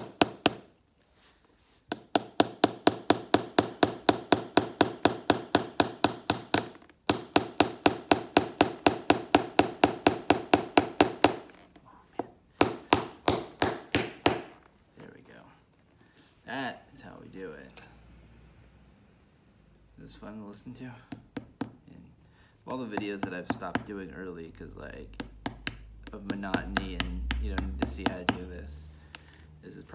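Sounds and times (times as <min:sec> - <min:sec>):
hammer tapping nails into leather: 0:00.0 - 0:00.8, 0:01.9 - 0:11.6, 0:12.2 - 0:14.7, 0:21.0 - 0:21.8, 0:22.7 - 0:24.0, 0:25.1 - 0:29.3.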